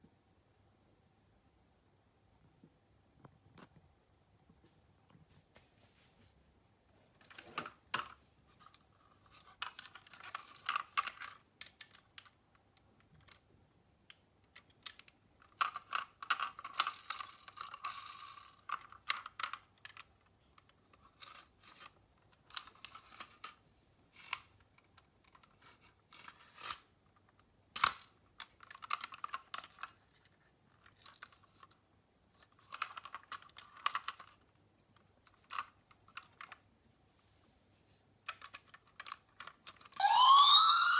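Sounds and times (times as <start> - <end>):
toy cars rattling and clicking: 8.6 - 12.4, 14.5 - 23.6, 24.2 - 26.9, 27.8 - 31.8, 32.4 - 34.5, 38.3 - 40.0.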